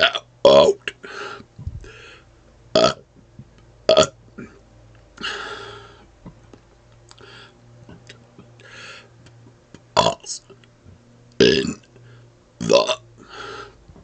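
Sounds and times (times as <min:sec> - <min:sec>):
man burping: 0:00.0 - 0:01.0, 0:02.8 - 0:03.0, 0:03.9 - 0:04.6, 0:10.0 - 0:10.3, 0:11.4 - 0:11.9, 0:12.6 - 0:13.0.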